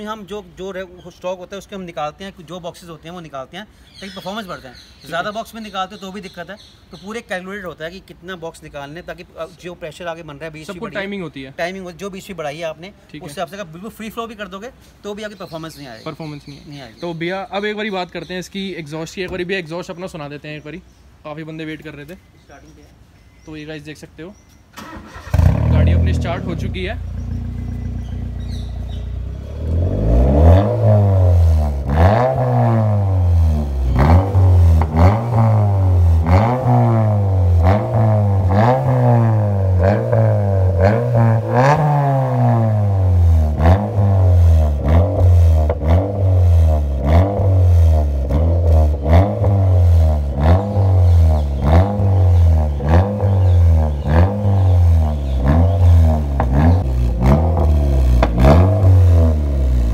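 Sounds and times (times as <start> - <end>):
car engine revving: 24.8 - 59.9
exhaust pops and crackles: 30.6 - 59.9.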